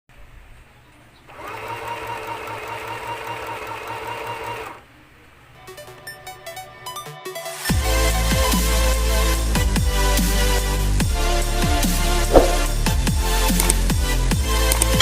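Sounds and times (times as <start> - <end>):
sewing machine running: 1.3 - 4.8.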